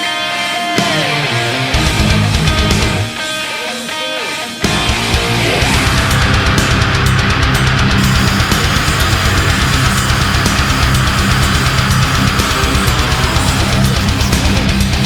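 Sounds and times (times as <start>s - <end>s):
distorted electric guitar: 0.0s - 15.0s
heavy rock music: 0.0s - 15.0s
fast drum beat: 7.5s - 15.0s.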